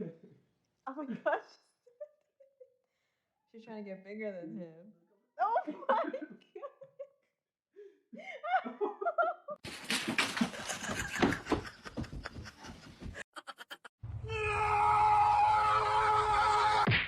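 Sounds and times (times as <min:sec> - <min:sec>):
person laughing: 0:10.4 - 0:13.9.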